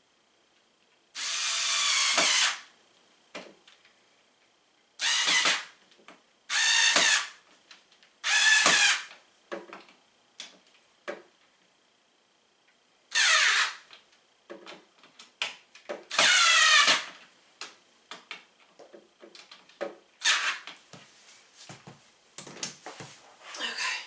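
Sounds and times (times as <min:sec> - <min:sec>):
power drill whirring: 0:01.2 - 0:02.7, 0:05.0 - 0:05.7, 0:06.5 - 0:07.4, 0:08.2 - 0:09.1, 0:13.1 - 0:13.8, 0:16.1 - 0:17.1.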